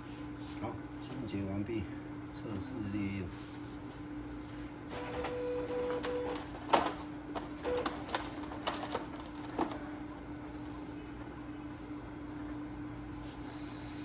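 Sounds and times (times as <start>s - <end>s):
printer motor whine: 4.7s - 14.0s
printer clicks and clunks: 4.9s - 9.9s.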